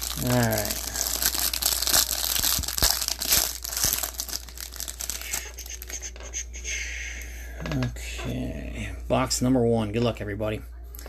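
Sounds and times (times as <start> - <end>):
packaging crinkling and tearing: 0.0 - 6.0.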